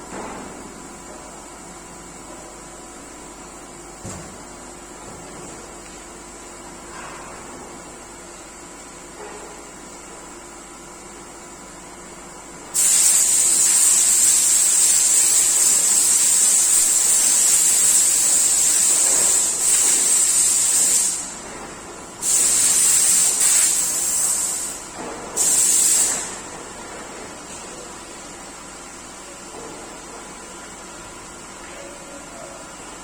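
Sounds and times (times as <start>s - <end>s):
workshop machinery hum: 0.0s - 33.0s
compressed air hissing: 12.7s - 21.4s, 22.2s - 26.4s.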